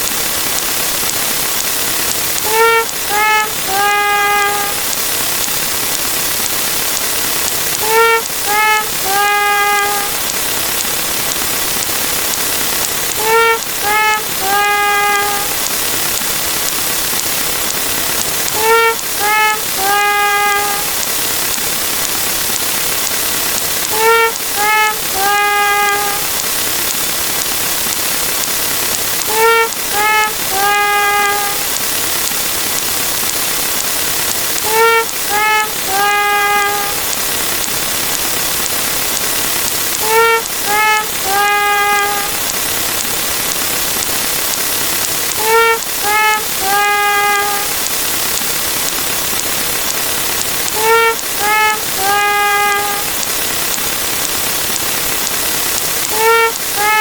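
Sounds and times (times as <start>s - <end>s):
steady hiss: 0.0s - 57.0s
sad trumpet wah notes: 2.4s - 4.9s, 7.8s - 10.2s, 13.1s - 15.7s, 18.5s - 21.0s, 23.9s - 26.4s, 29.2s - 31.8s, 34.6s - 37.2s, 40.0s - 42.5s, 45.4s - 47.9s, 50.7s - 53.2s, 56.1s - 57.0s.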